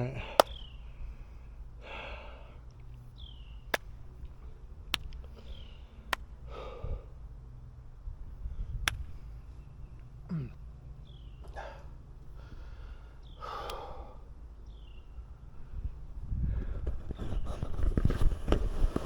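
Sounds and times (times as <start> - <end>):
man breathing heavily: 0.0 - 3.3, 4.4 - 7.7, 11.4 - 16.9
sharp clicks: 0.4 - 0.7, 3.6 - 5.5, 8.8 - 9.2, 13.5 - 13.9.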